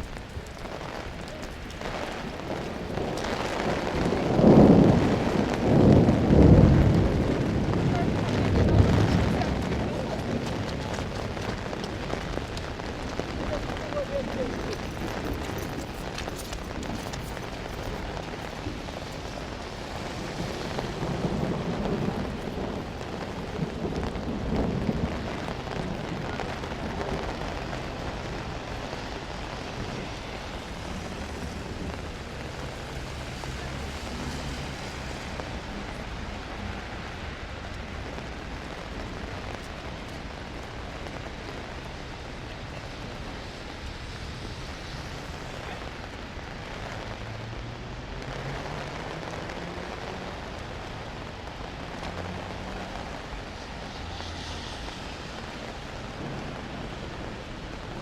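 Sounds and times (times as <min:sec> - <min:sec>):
thunder rumbling: 0:00.0 - 0:47.5
rain falling: 0:00.0 - 0:58.0.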